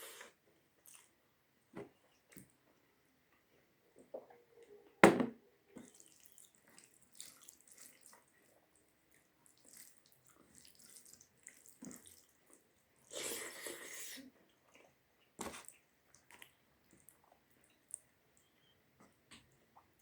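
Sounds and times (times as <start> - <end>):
wet chewing sounds: 5.8 - 18.7.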